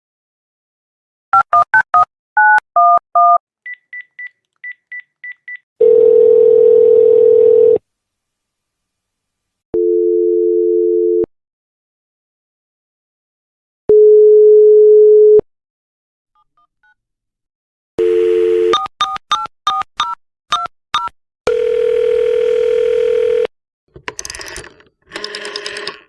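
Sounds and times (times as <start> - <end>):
telephone line tone: 5.8 - 7.8, 9.8 - 11.3, 13.9 - 15.4, 18.0 - 18.8, 21.5 - 23.5.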